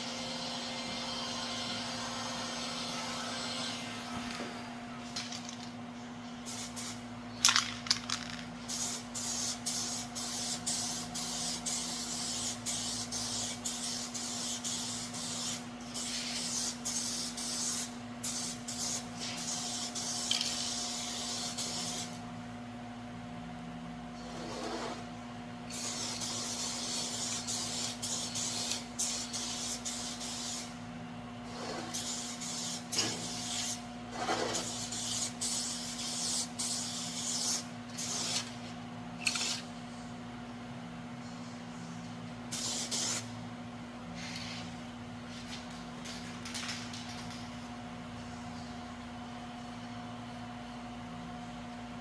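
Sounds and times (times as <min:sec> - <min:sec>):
steady low hum: 0:00.0 - 0:52.0
spray can hissing: 0:08.7 - 0:22.2, 0:25.7 - 0:30.7, 0:34.5 - 0:38.6, 0:42.5 - 0:43.3.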